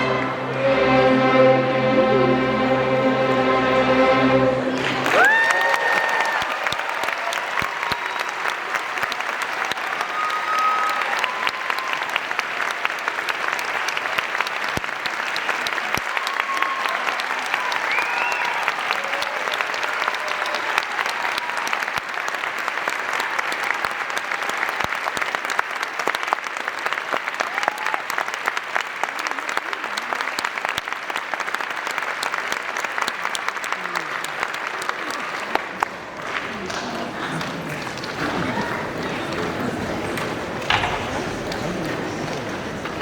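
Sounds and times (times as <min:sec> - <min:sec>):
audience applauding: 0:03.2 - 0:43.0.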